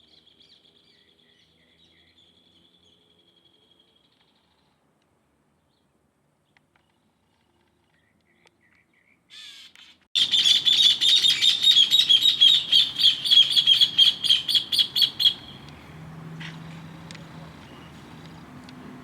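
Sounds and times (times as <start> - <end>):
bird chirping rapidly: 10.2 - 15.8.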